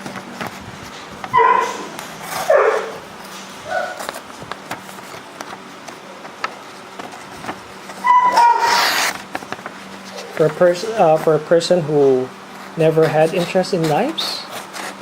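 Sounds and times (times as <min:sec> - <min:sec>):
dogs yipping and whining: 0:01.3 - 0:04.0, 0:08.0 - 0:09.1.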